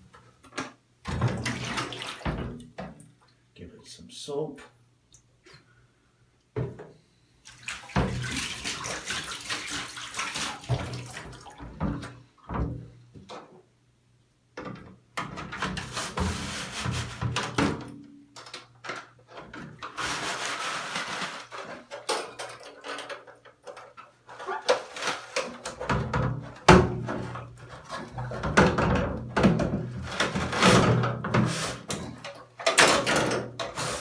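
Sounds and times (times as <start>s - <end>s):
wet steel wool scrubbing plastic: 7.5s - 11.7s, 15.6s - 17.6s, 19.5s - 34.0s.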